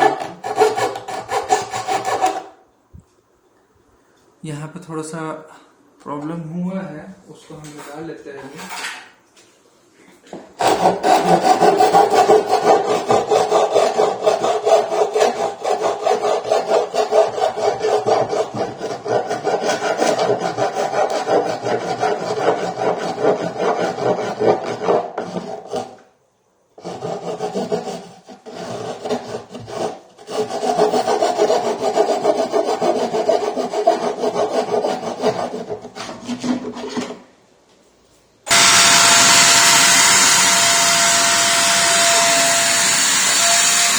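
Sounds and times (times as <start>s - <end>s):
hand rasping wood: 0.0s - 2.5s, 10.6s - 26.0s, 26.8s - 36.8s
steady motor whine: 38.5s - 43.9s.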